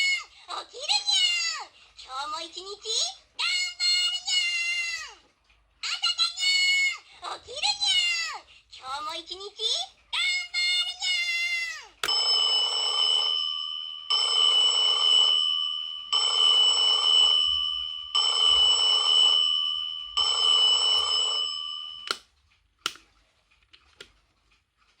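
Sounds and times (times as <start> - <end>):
alarm clock bell ringing: 12.0 - 22.2
alarm clock click: 12.0 - 23.1.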